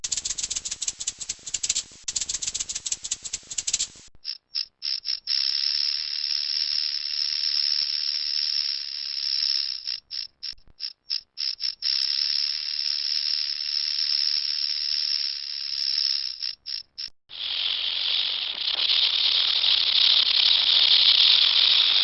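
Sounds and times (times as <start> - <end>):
rattlesnake tail rattling: 0.0 - 22.0.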